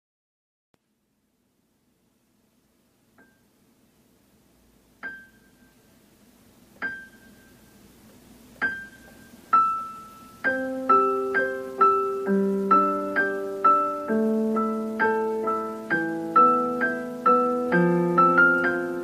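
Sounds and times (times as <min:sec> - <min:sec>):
piano playing slow song: 0:05.0 - 0:05.8, 0:06.8 - 0:07.8, 0:08.4 - 0:19.0.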